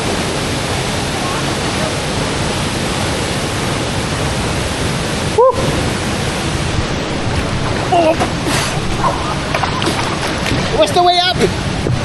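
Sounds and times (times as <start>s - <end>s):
waterfall rushing: 0.0s - 12.0s.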